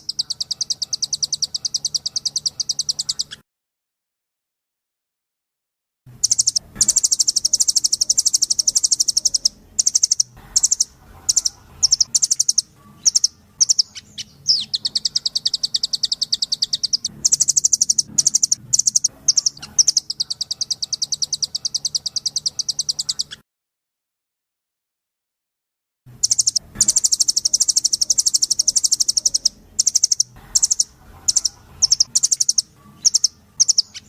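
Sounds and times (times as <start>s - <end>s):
bird singing rapid trills: 0.0s - 3.4s, 6.2s - 23.4s, 26.2s - 34.0s.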